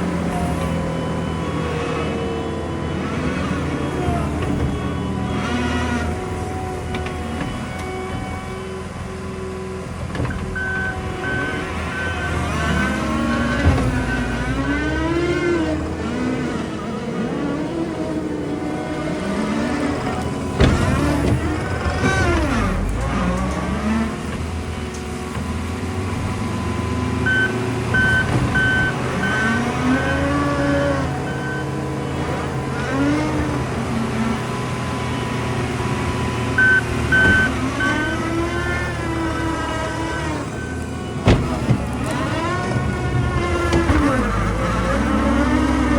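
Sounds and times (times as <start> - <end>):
reversing alarm beeping: 0.0 - 8.8, 10.2 - 15.7, 26.8 - 31.9, 36.5 - 43.0
diesel engine revving under load: 0.0 - 45.9
backup alarm beeping: 10.3 - 15.1, 27.2 - 30.3, 36.6 - 38.3.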